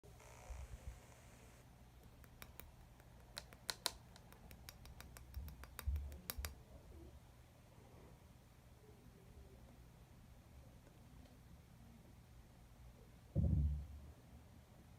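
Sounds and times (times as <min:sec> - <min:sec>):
dull low thumps: 0:13.4 - 0:14.0.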